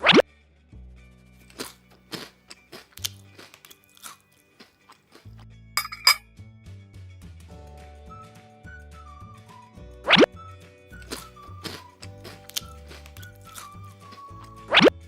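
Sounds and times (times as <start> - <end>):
background music: 0.0 - 15.0.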